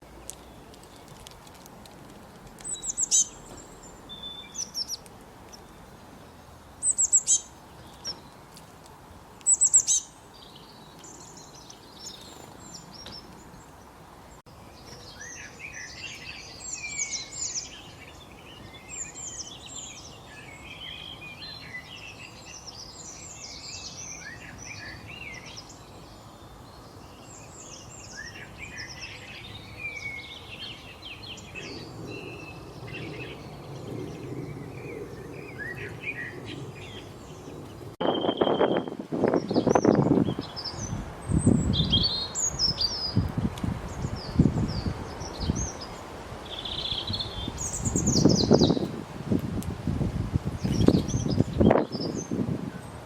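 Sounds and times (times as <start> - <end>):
bird calls: 2.6 - 8.4, 9.4 - 13.9, 43.9 - 48.9
overlapping bird chirps: 2.6 - 8.5, 9.4 - 13.9, 14.7 - 48.8.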